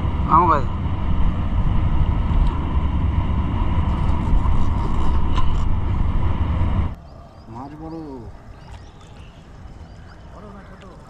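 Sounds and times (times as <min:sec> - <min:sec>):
motorboat engine rumbling: 0:00.0 - 0:07.0.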